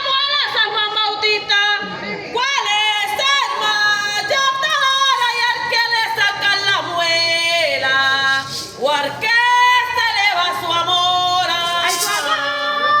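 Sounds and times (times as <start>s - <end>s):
woman singing unaccompanied: 0.0s - 13.0s.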